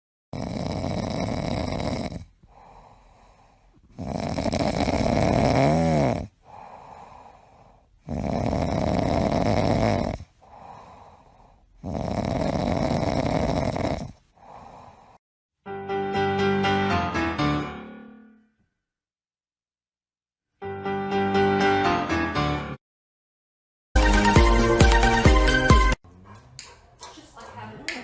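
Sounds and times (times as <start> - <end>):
dog breathing: 0.4 - 15.2
dog snoring: 0.4 - 15.2.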